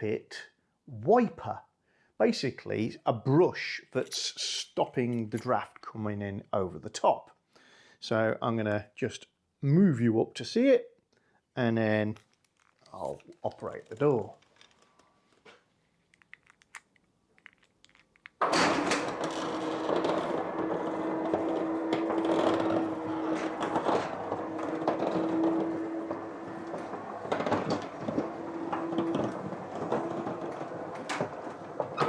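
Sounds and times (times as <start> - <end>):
roller shutter door running: 18.4 - 32.0.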